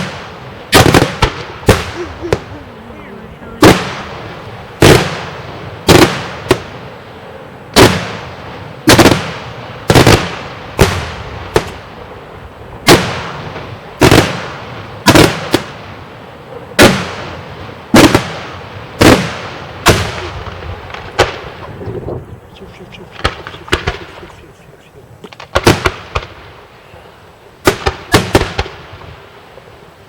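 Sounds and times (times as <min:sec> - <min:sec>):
fireworks bursting with loud bangs: 0:00.0 - 0:26.9, 0:27.6 - 0:29.8.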